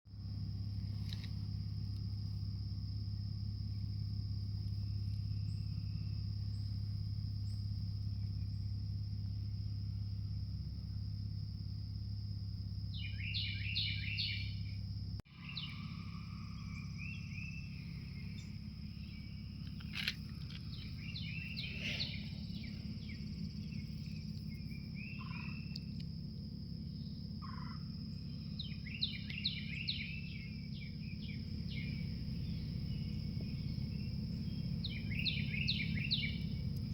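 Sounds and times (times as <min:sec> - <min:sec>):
high-pitched insect trill: 0:00.1 - 0:36.9
low rumble: 0:00.2 - 0:36.9
birds chirping: 0:12.9 - 0:26.1, 0:26.8 - 0:36.9.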